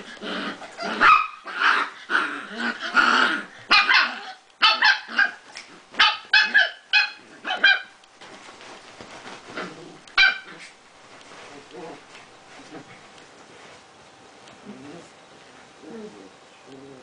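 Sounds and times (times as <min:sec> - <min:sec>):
dogs barking and growling: 0:00.0 - 0:08.0.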